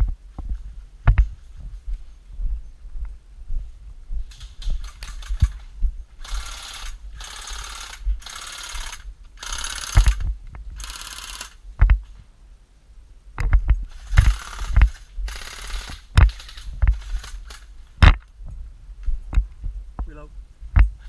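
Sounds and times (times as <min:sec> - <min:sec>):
airsoft rifle shots: 0:06.3 - 0:11.6.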